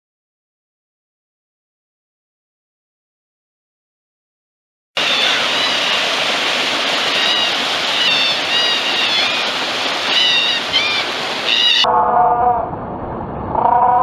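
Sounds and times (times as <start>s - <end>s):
stream water rushing: 5.0s - 11.9s.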